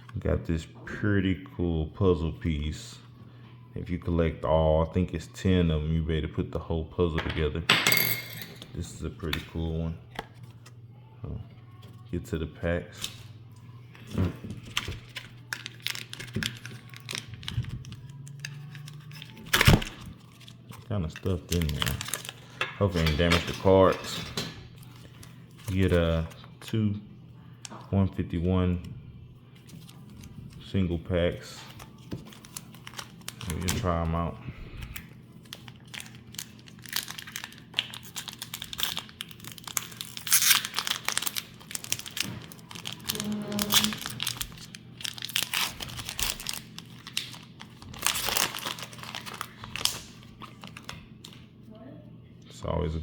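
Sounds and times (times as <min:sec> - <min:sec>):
foil wrapper crinkling and tearing: 0:14.6 - 0:23.7, 0:31.6 - 0:34.0, 0:34.9 - 0:51.4.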